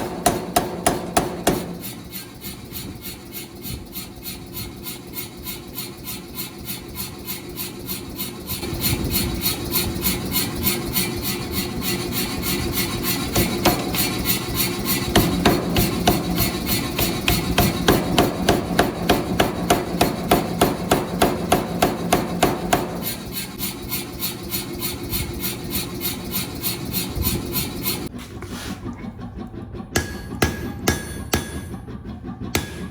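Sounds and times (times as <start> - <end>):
power hammer striking hot steel: 0.0 - 3.2, 12.7 - 23.5, 29.9 - 31.8, 32.6 - 32.9
steady motor hum: 0.0 - 32.9.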